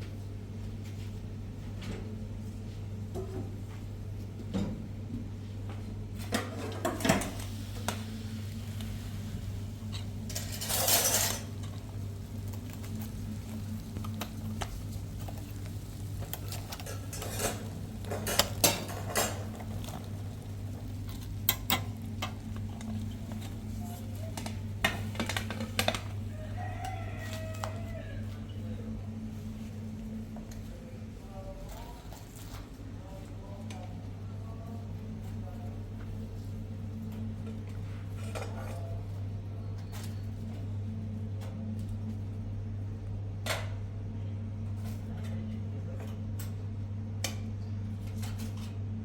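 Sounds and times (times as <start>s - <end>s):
steady low hum: 0.0s - 49.0s
dishes and utensils clinking: 9.9s - 11.8s, 16.5s - 20.0s.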